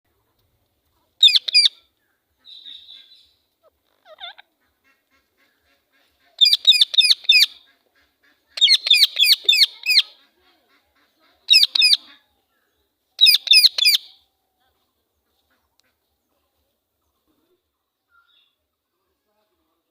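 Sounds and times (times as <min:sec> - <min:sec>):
parrot chattering softly: 0:03.6 - 0:04.4, 0:11.5 - 0:12.1.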